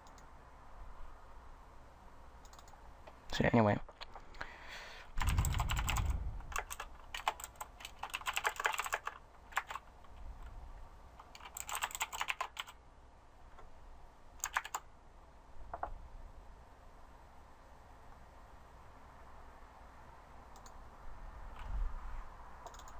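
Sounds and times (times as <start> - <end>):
computer keyboard typing: 2.4 - 2.8, 5.2 - 10.5, 11.2 - 12.8, 14.4 - 14.8, 22.6 - 22.9.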